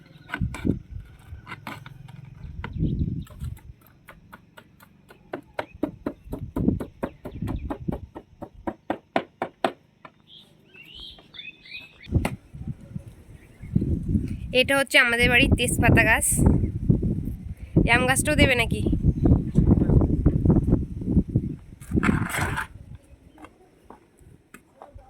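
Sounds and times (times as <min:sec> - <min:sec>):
bird chirps: 0:10.0 - 0:12.1.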